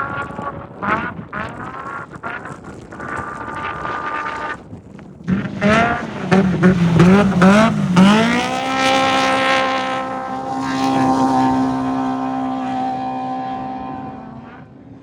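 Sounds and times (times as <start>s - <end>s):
race vehicle engine revving: 5.2s - 15.0s.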